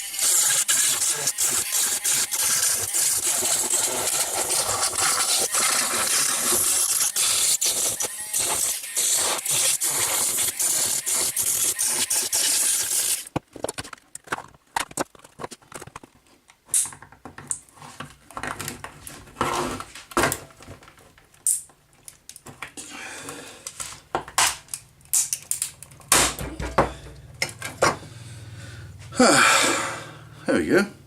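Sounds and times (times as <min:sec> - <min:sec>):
saw cutting through plastic: 0:00.0 - 0:13.3
plastic and metal parts rattling: 0:13.3 - 0:21.4.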